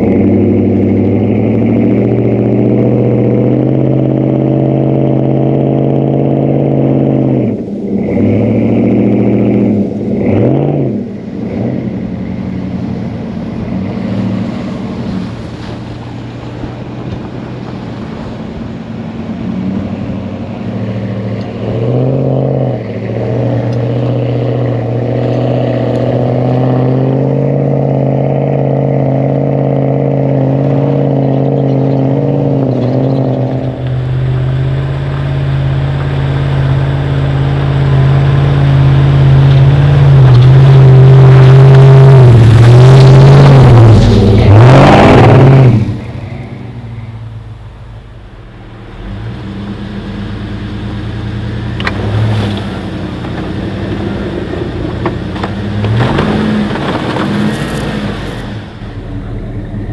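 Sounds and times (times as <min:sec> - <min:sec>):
car engine running: 0:27.4 - 0:59.9.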